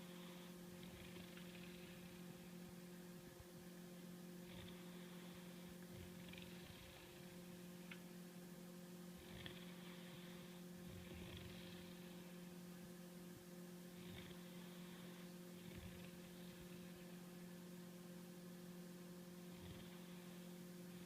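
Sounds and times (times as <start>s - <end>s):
dog snoring faintly: 0.0s - 8.3s, 8.9s - 21.0s
steady electrical hum: 0.0s - 21.0s.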